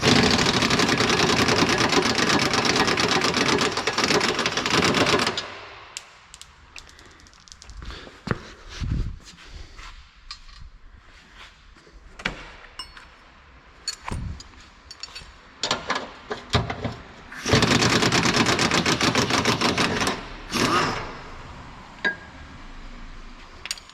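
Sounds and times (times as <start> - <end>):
pneumatic impact wrench rattling: 0.0 - 5.6, 17.3 - 21.3
metal tools clinking: 12.8 - 13.1, 13.8 - 15.7, 23.6 - 23.9.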